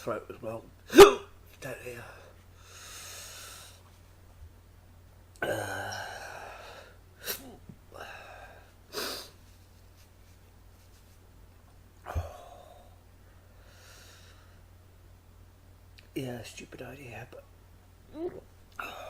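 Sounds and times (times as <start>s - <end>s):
man breathing hard and hissing: 2.6s - 3.8s, 5.7s - 9.4s.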